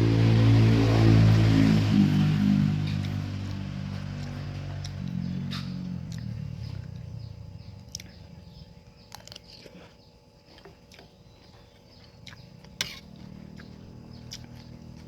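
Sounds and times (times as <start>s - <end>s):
person chewing and smacking: 6.1s - 7.2s, 7.8s - 8.3s, 8.9s - 15.0s.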